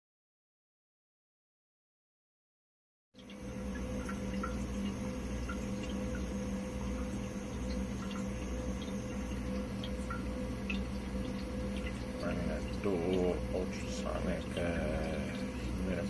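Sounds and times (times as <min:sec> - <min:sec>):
electric hum with pulsing throb: 0:03.2 - 0:16.0
water dripping and gurgling: 0:03.2 - 0:16.0.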